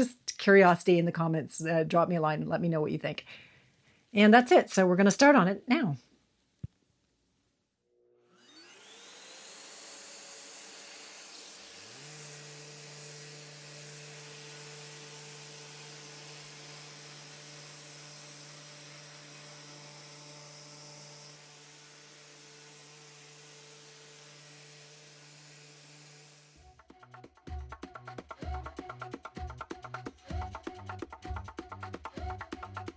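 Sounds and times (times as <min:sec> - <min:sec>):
electric sander running: 0:08.2 - 0:27.2
dust extractor vacuum rush: 0:08.4 - 0:26.6.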